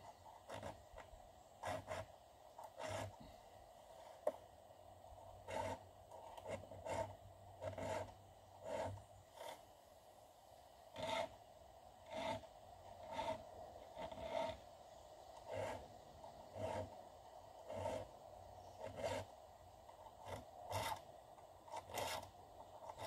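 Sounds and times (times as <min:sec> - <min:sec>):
file rasping on chainsaw chain: 0:00.3 - 0:03.3, 0:05.4 - 0:09.6, 0:11.0 - 0:11.4, 0:12.0 - 0:14.6, 0:15.4 - 0:17.0, 0:17.6 - 0:19.3, 0:19.9 - 0:21.1, 0:21.7 - 0:23.0.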